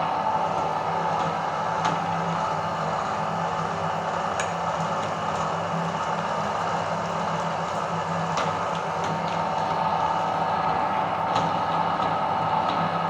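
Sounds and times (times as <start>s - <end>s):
meat grinder motor running: 0.0s - 13.0s.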